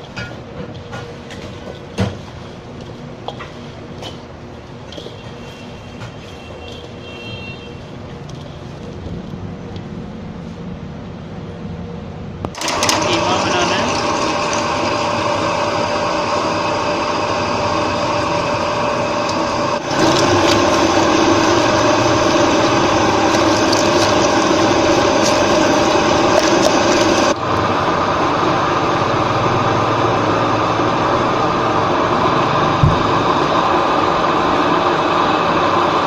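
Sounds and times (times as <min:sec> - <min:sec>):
electric meat mincer running: 0:12.5 - 0:36.0.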